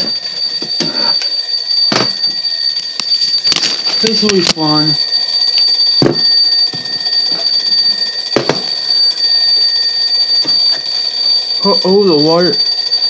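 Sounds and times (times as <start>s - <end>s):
smoke alarms beeping: 0.0s - 13.0s
sharp knocks: 1.9s - 2.2s, 6.0s - 7.4s, 8.4s - 8.7s.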